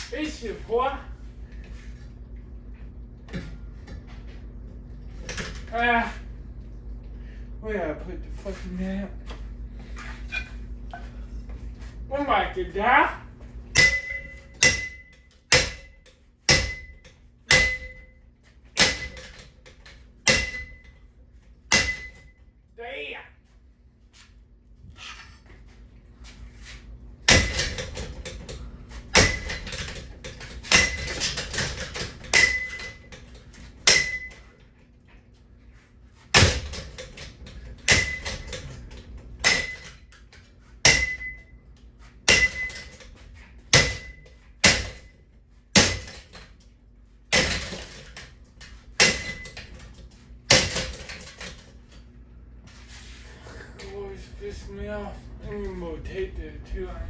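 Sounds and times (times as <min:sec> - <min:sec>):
heavy blows on ceiling fan: 0:51.7 - 0:57.0.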